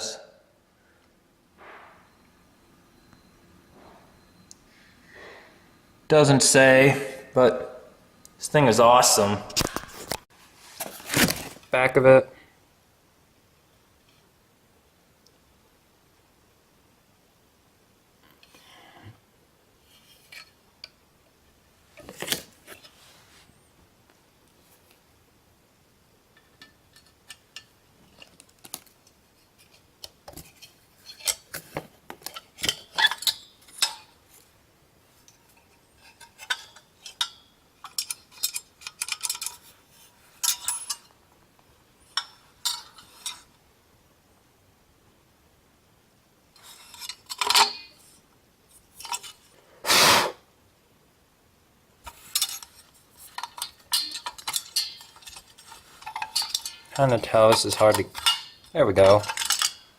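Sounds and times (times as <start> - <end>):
metal housing clicks and clinks: 26.3 - 31.6, 32.2 - 34.2, 35.2 - 39.8, 40.4 - 41.2, 42.1 - 43.5, 46.6 - 48.2, 49.0 - 49.5, 52.1 - 59.9
metal clanking: 52.1 - 59.9.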